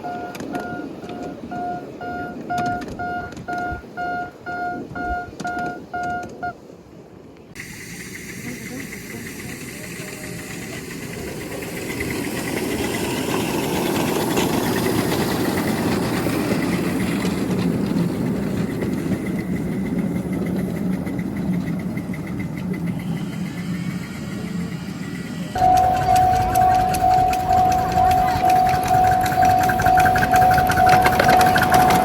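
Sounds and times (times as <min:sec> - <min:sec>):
mini train engine running: 0:07.6 - 0:32.0.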